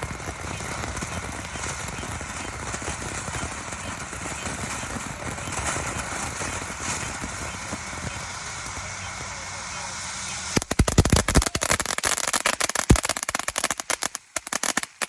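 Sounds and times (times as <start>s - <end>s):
fireworks crackling: 0.0s - 15.0s.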